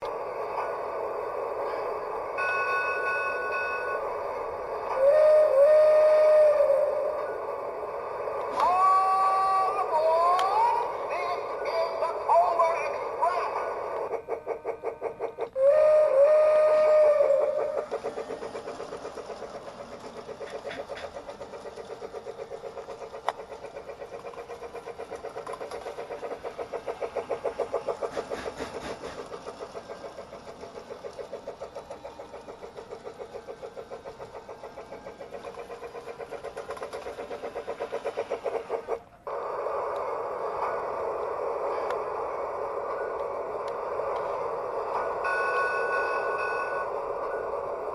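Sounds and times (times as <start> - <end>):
toy train steam chuffing: 0.0 - 47.9
two-tone train whistle: 4.8 - 7.4, 8.5 - 10.9, 15.5 - 18.0.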